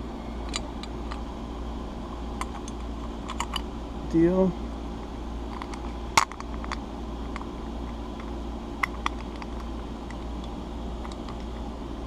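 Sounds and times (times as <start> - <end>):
steady background hum: 0.0 - 12.0
metal lock parts clicking: 0.4 - 1.2, 2.4 - 3.6, 5.5 - 7.5, 8.2 - 10.2, 11.0 - 11.7.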